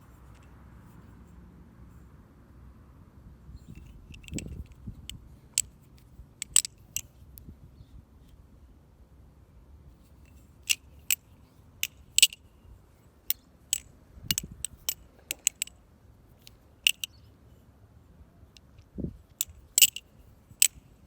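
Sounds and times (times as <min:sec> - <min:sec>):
balisong handles clicking: 0:03.6 - 0:07.2, 0:10.2 - 0:12.5, 0:13.2 - 0:15.8, 0:16.4 - 0:17.2, 0:18.5 - 0:20.9.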